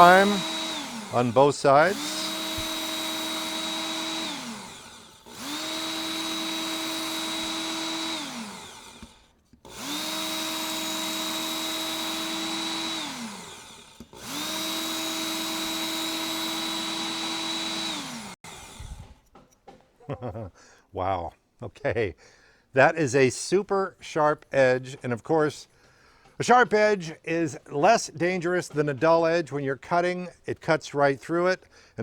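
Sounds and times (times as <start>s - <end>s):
electric belt sharpener motor whining: 0.0s - 19.2s.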